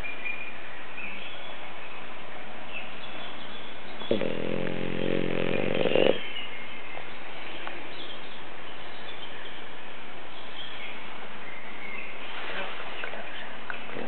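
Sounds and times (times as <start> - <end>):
steady background hiss: 0.0 - 14.0
dog snoring: 4.0 - 6.3.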